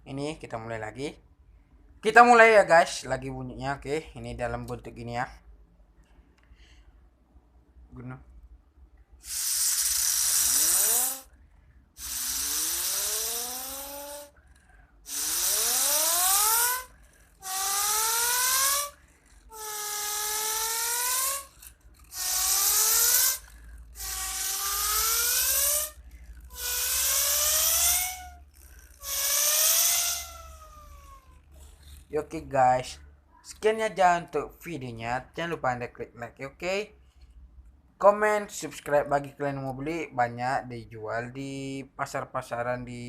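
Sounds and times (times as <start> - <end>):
toy car engine revving effect: 9.2 - 32.1.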